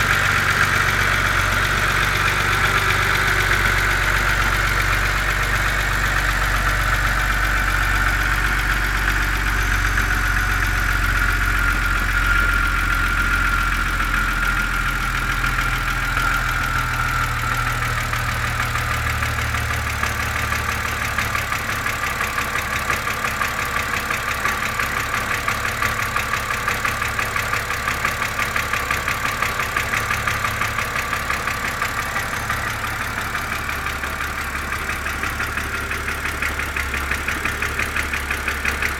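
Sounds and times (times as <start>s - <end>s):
car engine idling: 0.0s - 38.9s
rapid engine ticking: 0.0s - 38.9s.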